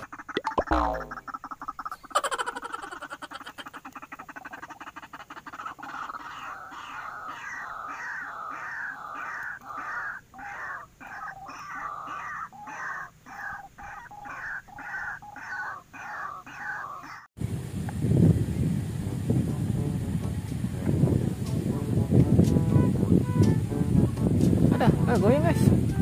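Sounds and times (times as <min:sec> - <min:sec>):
waterhen calling: 0:00.0 - 0:17.3.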